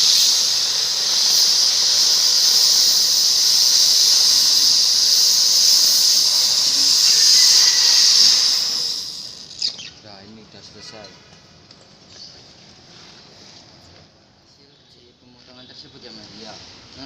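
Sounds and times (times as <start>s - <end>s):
cutting torch hissing: 0.0s - 10.0s.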